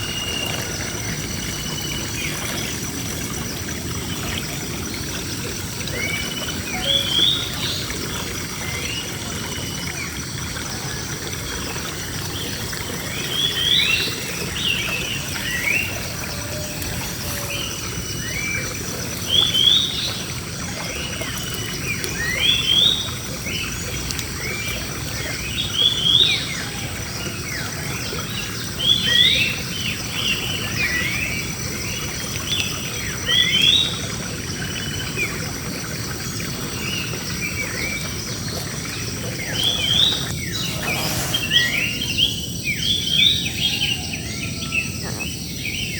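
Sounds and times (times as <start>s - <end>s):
birds singing: 0.0s - 10.4s, 11.0s - 35.5s, 36.2s - 45.9s
steady hiss: 39.7s - 42.3s.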